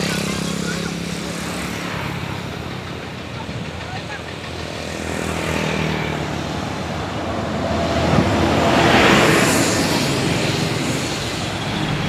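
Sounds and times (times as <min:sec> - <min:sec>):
vehicle driving past: 0:04.8 - 0:12.0.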